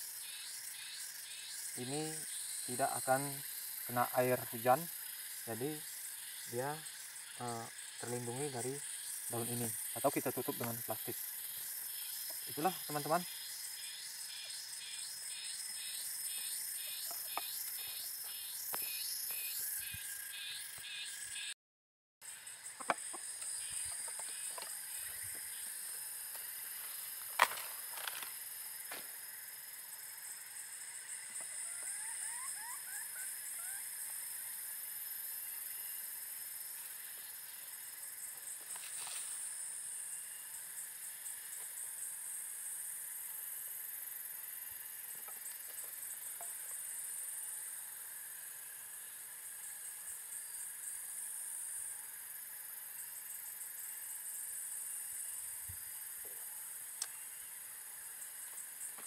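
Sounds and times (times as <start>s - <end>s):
insect hiss: 0.0s - 21.6s, 22.2s - 59.0s
animal chirping: 31.6s - 33.9s.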